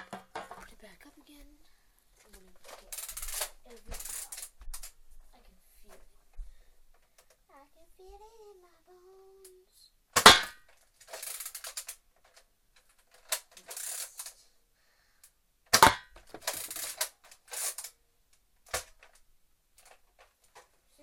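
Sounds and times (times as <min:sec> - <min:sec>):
toy blaster firing thump: 0:02.6 - 0:04.9, 0:10.2 - 0:11.9, 0:15.7 - 0:17.9
lever action clattering: 0:15.7 - 0:17.9.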